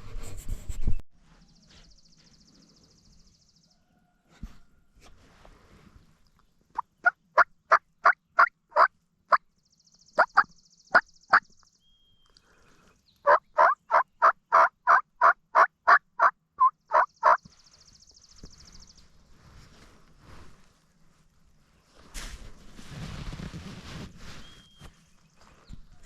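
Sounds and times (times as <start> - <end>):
turkey call yelps: 8.0 - 8.9, 10.2 - 11.0, 13.3 - 17.4.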